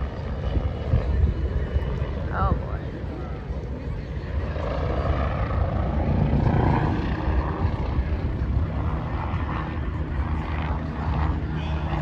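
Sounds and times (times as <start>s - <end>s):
plane flying past: 0.0s - 12.0s.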